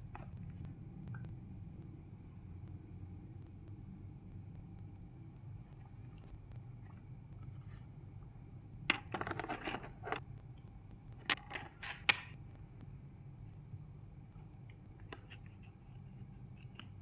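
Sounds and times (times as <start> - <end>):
small hard objects clattering: 8.9 - 10.2, 11.2 - 12.4.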